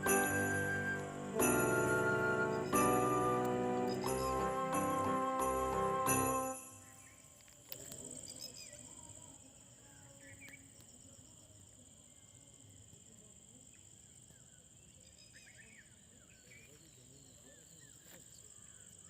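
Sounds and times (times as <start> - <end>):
faint bird chirps: 13.7 - 19.0.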